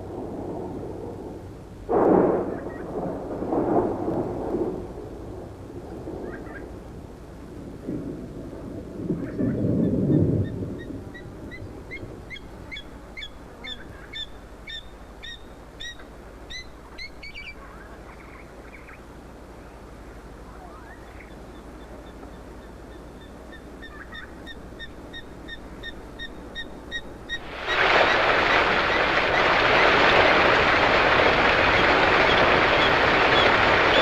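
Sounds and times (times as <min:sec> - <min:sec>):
steady background hiss: 0:00.0 - 0:34.0
bird calling repeated notes: 0:20.8 - 0:29.5.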